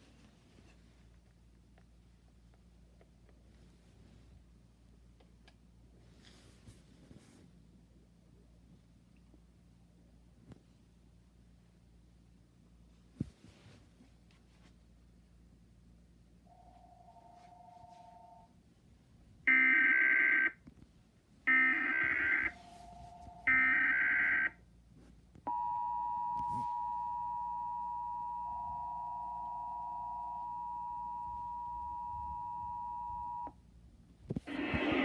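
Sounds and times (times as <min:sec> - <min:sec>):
two-tone attention signal: 0:25.5 - 0:33.5.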